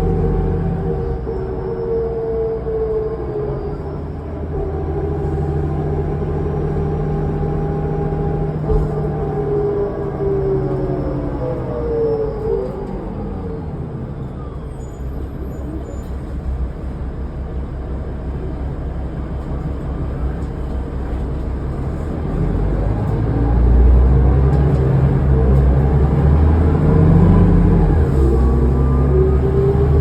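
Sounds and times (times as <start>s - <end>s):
bus drivetrain rumble: 0.0s - 30.0s.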